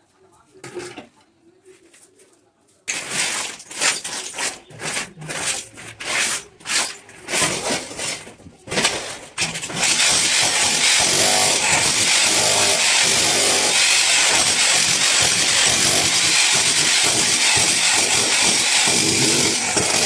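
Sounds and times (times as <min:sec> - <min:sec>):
hammer chipping masonry: 0:02.9 - 0:20.0
power tool cutting hissing: 0:09.7 - 0:20.0.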